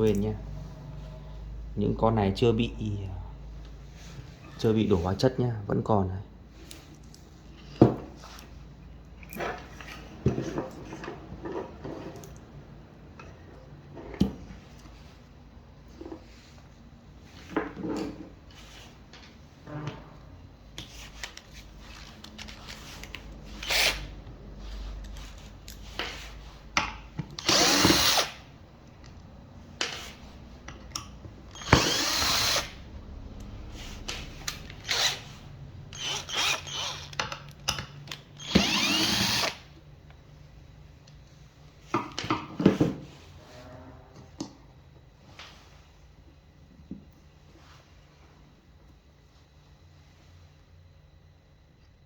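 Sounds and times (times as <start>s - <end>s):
power drill running: 23.6s - 24.1s, 27.4s - 28.4s, 31.5s - 32.8s, 34.7s - 37.2s, 38.4s - 39.7s.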